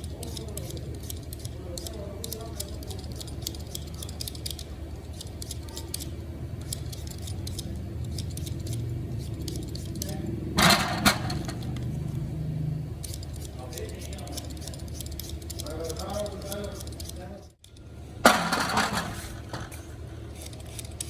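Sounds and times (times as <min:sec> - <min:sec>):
metal utensils clinking and scraping: 0:06.7 - 0:12.1, 0:18.3 - 0:21.0.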